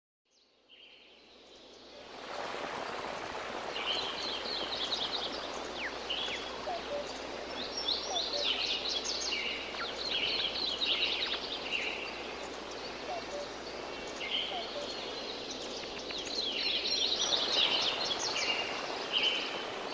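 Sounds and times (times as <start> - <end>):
steady hiss of background noise: 0.5 - 19.9
birds chirping and calling: 4.8 - 19.6.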